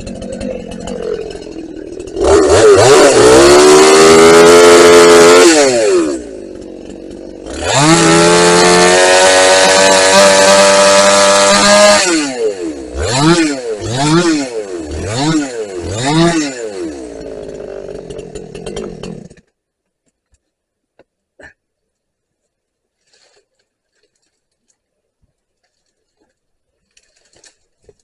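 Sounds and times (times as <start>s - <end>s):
chainsaw revving and idling: 0.0s - 19.6s.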